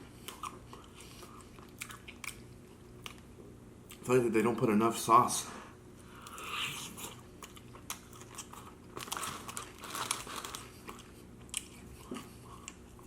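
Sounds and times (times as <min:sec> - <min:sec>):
chewing and mouth smacking: 0:00.2 - 0:03.3, 0:06.2 - 0:09.8, 0:10.5 - 0:13.0.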